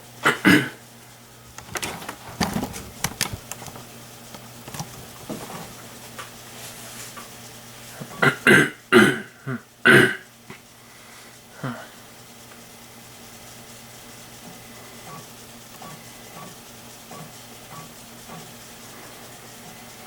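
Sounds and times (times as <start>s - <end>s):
person coughing: 0.2s - 0.8s, 8.1s - 10.3s.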